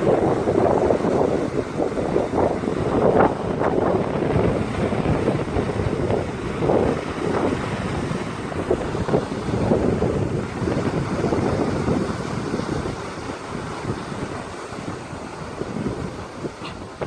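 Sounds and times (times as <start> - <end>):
sea waves on shore: 0.0 - 17.0
wind buffeting microphone: 0.0 - 17.0.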